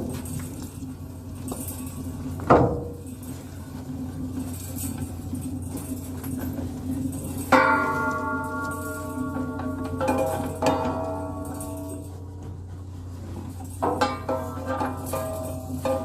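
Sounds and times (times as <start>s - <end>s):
ringing bell-like tone: 7.4s - 12.5s.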